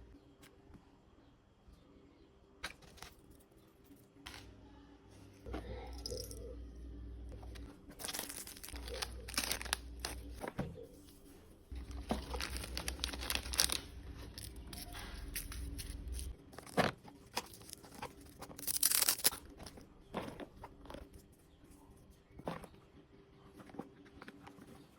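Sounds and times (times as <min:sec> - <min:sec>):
packaging tearing and crinkling: 0:07.9 - 0:10.4, 0:11.8 - 0:19.8.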